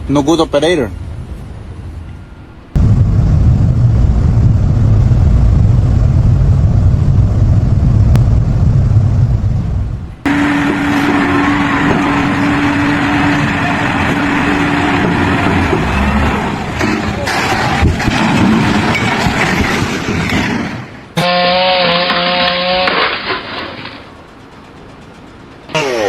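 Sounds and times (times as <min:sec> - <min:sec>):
low engine rumble: 0:00.0 - 0:21.8
engine with steady hum: 0:02.6 - 0:19.7.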